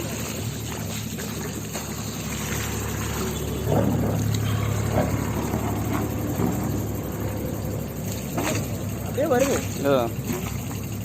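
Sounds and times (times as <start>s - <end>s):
air compressor running: 0.0s - 11.0s
water splashing and pouring: 0.0s - 11.0s.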